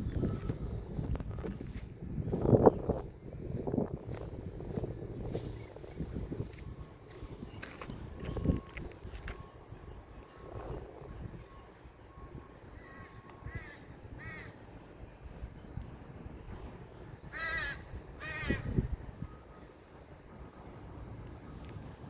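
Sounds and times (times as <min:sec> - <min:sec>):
crow cawing: 0:12.8 - 0:14.6, 0:17.3 - 0:18.8.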